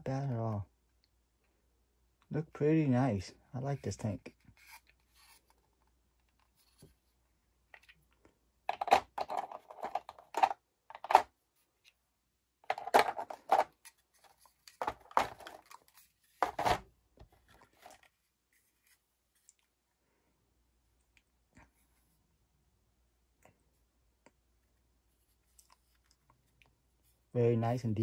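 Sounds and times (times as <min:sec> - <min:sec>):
plastic packaging rustling and clicking: 0:08.7 - 0:11.3, 0:12.7 - 0:18.2.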